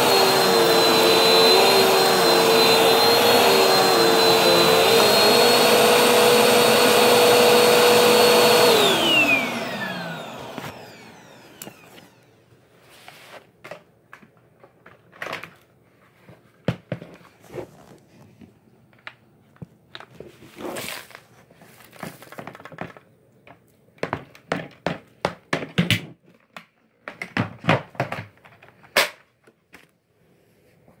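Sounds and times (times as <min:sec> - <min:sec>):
objects knocking and clicking: 0:22.0 - 0:29.0.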